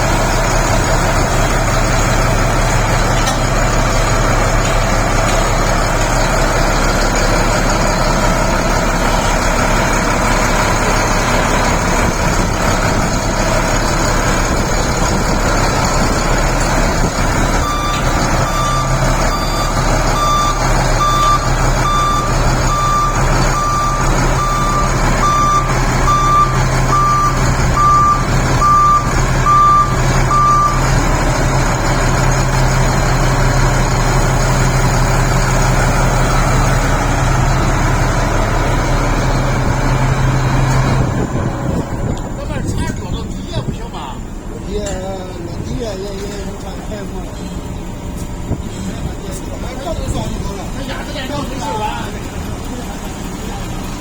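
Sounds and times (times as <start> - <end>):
bulldozer diesel engine running: 0.0 - 54.0
reversing alarm beeping: 0.4 - 41.4.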